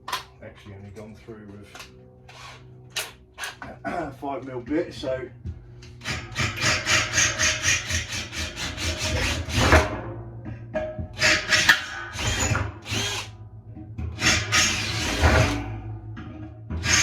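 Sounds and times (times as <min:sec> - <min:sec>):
power drill boring into metal: 0:02.3 - 0:02.6, 0:06.0 - 0:09.8, 0:11.2 - 0:13.3, 0:14.2 - 0:15.6, 0:16.8 - 0:17.0.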